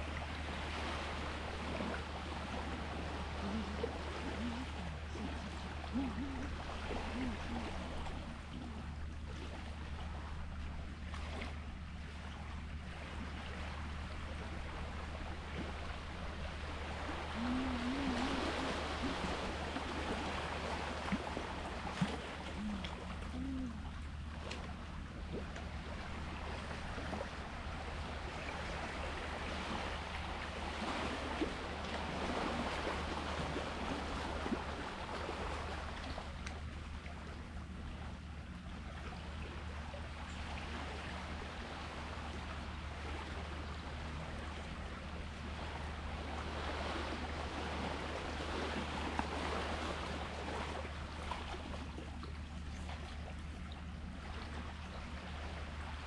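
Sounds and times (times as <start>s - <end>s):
sea waves washing in: 0.0s - 11.6s, 12.7s - 24.4s, 40.6s - 52.0s
steady low hum: 0.0s - 56.0s.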